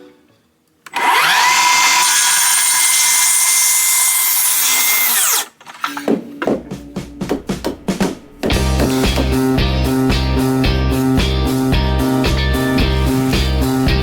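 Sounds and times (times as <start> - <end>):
power tool motor whine: 0.9 - 5.6.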